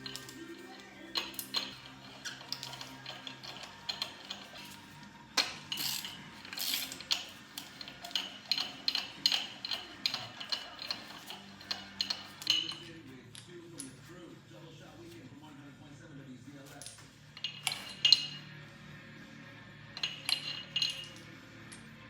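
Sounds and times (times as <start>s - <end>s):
ratchet wrench clicking: 0.0s - 12.9s, 17.4s - 18.5s, 20.0s - 21.9s
light metal clinks: 0.0s - 14.0s, 16.7s - 18.6s, 20.0s - 22.0s.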